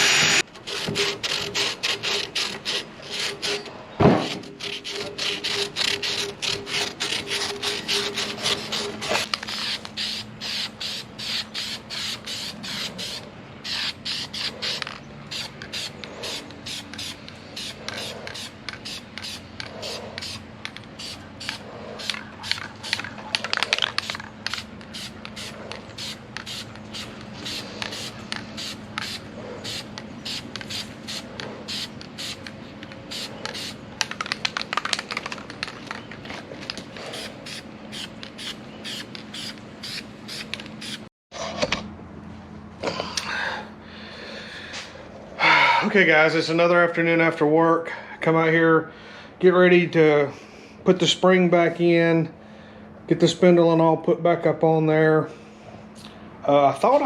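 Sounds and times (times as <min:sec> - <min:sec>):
rapid scraping strokes: 0:00.0 - 0:32.5, 0:36.9 - 0:41.1
faint steady hum: 0:41.7 - 0:57.0.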